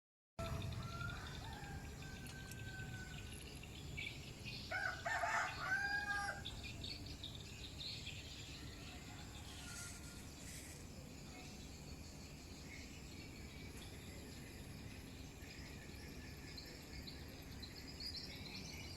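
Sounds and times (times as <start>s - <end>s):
rooster crowing: 0.4s - 3.4s, 4.7s - 6.5s, 8.6s - 10.4s
birds chirping: 0.4s - 18.9s.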